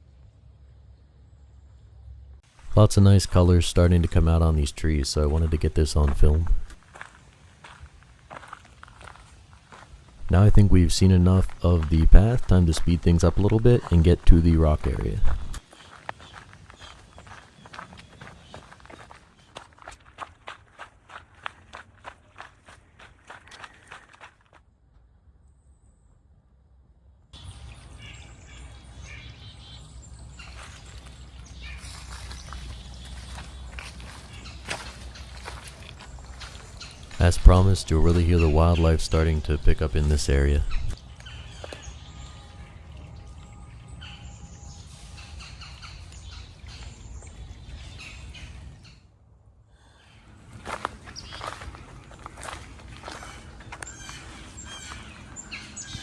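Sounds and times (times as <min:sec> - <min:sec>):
steady low rumble: 0:01.9 - 0:06.8, 0:10.2 - 0:15.6, 0:31.8 - 0:41.0
birds chirping: 0:02.6 - 0:07.1, 0:08.4 - 0:19.9, 0:27.4 - 0:49.1, 0:49.8 - 0:56.0
footsteps crunching on leaf litter: 0:05.3 - 0:10.2, 0:11.4 - 0:24.5, 0:30.4 - 0:40.9, 0:50.4 - 0:55.4.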